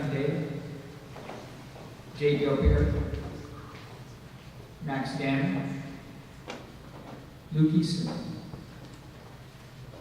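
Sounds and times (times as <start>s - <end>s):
man speaking: 2.2s - 3.5s, 4.8s - 6.0s, 7.5s - 8.5s.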